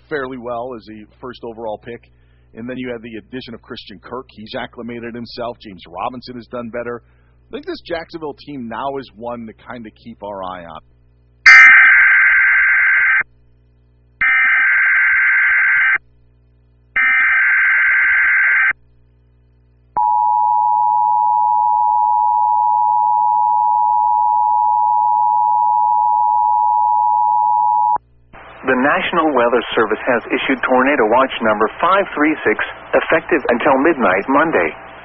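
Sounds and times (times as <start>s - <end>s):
data tone bursts: 11.5s - 13.2s.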